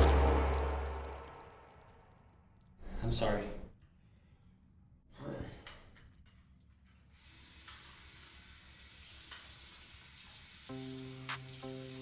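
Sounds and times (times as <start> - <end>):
music with high ticking beat: 0.0 - 1.4, 10.3 - 12.0.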